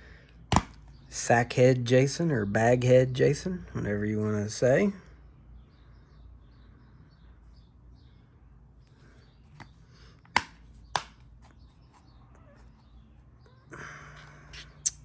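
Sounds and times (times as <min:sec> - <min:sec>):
plastic disc case clicks: 0:09.6 - 0:11.3.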